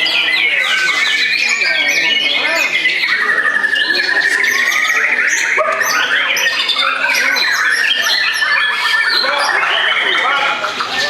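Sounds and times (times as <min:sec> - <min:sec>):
birds singing whistles and trills: 0:00.0 - 0:11.0.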